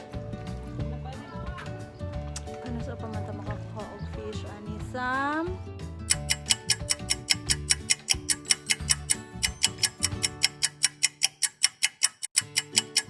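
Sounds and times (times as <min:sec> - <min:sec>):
background music with bass: 0:00.0 - 0:10.5
rapid clock ticking: 0:06.1 - 0:13.0.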